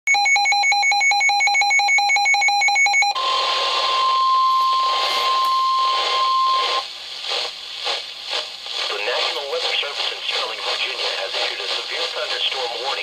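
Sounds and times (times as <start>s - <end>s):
rapid electronic alert beeping: 0.1s - 3.2s
steady alarm tone: 0.1s - 6.8s
radio hiss: 3.2s - 13.0s.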